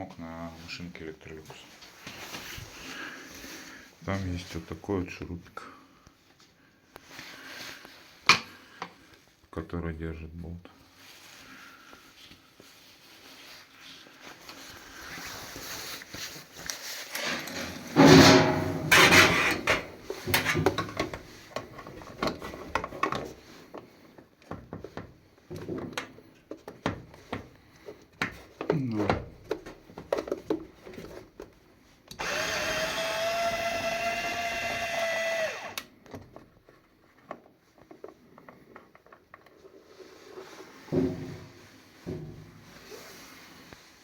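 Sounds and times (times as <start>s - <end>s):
clicks and knocks of tools: 17.1s - 28.7s
power drill running: 32.2s - 35.8s.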